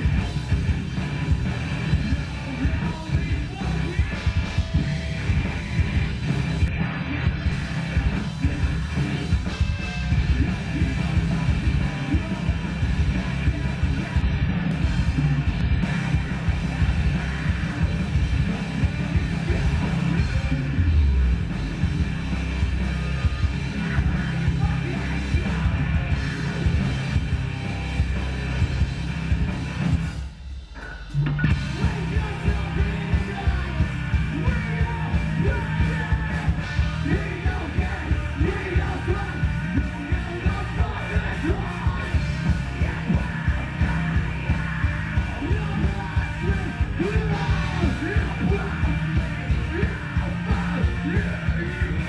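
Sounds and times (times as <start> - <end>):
rock music with vocals: 0.0 - 52.0.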